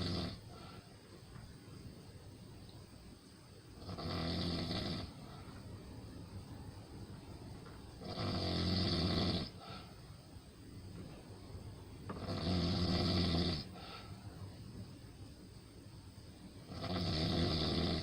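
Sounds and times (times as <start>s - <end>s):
person snoring: 8.0s - 9.7s, 12.1s - 13.8s, 16.7s - 18.0s.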